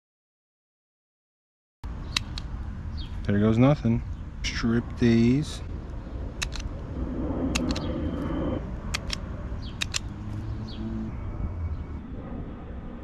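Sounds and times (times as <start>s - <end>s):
low hum: 4.0s - 13.0s
wire stripper clicking: 8.9s - 9.2s, 9.8s - 10.1s
faint humming tone: 10.1s - 13.0s.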